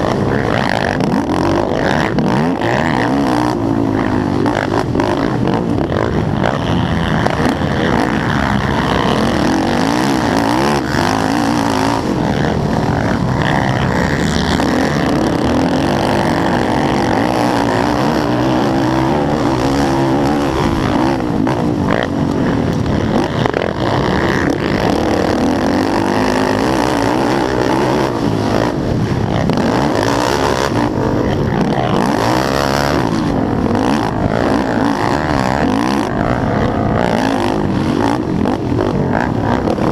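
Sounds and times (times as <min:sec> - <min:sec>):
quad engine revving: 0:00.0 - 0:39.9.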